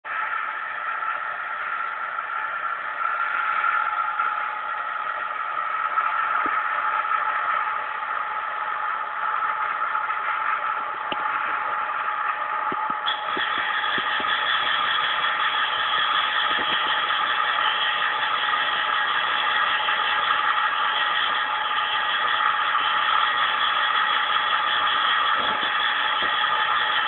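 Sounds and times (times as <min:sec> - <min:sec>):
bench grinder whirring: 0:12.3 - 0:27.0.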